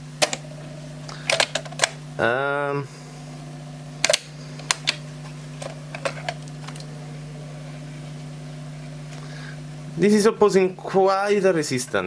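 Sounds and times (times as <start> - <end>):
steady low hum: 0.0 - 12.0
cassette deck mechanism clicks: 0.2 - 2.0, 4.0 - 6.9.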